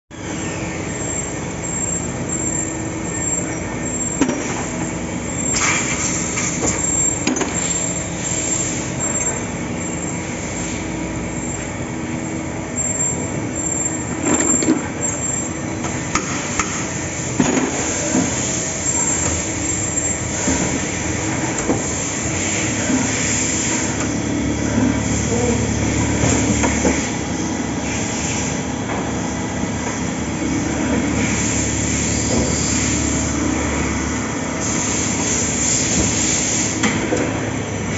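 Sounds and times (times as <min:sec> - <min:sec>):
machine humming: 0:16.9 - 0:37.9.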